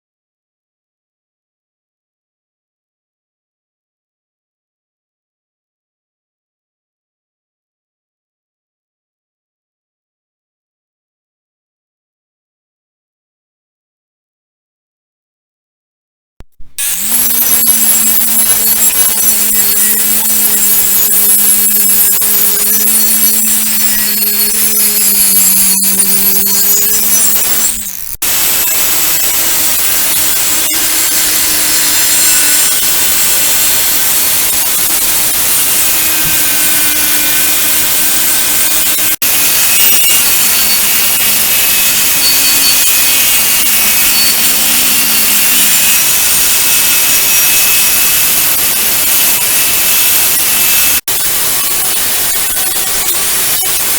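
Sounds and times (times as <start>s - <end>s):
power tool grinding steel: 16.4s - 53.9s.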